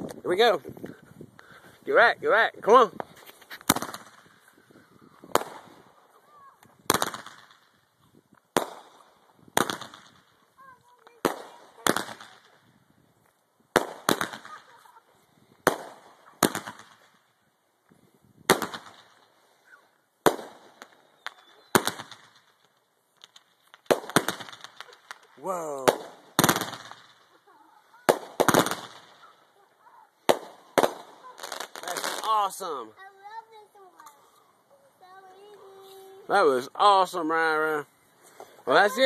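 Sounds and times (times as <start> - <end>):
fireworks bangs: 3.0 - 4.5, 5.2 - 7.9, 8.5 - 12.7, 13.7 - 17.4, 18.4 - 32.6.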